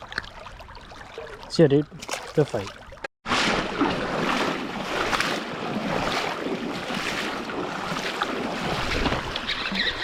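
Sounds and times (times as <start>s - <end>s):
river water flowing: 0.0s - 10.0s.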